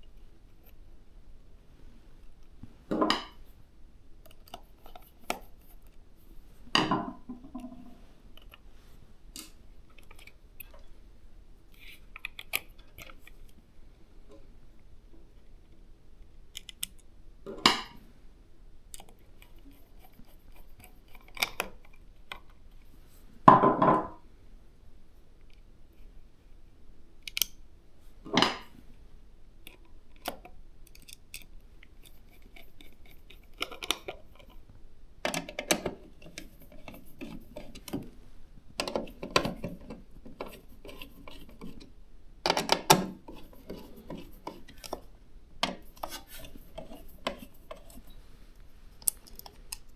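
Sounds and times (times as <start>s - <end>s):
clicks and taps of computer parts: 35.2s - 38.1s, 38.8s - 46.2s.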